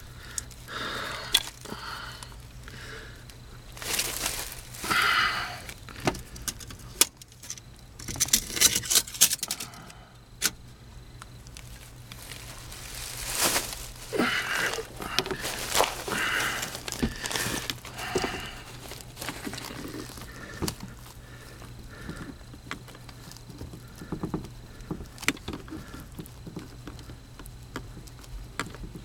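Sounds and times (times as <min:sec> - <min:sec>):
steady low hum: 0:00.0 - 0:29.0
scraping and rustling: 0:03.8 - 0:05.0, 0:11.5 - 0:21.8.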